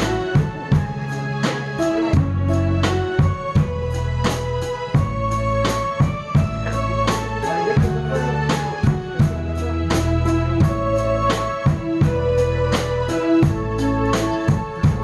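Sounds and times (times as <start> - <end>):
bass: 0.0 - 15.0
drum kit beat: 0.0 - 15.0
organ-like keyboard: 0.0 - 15.0.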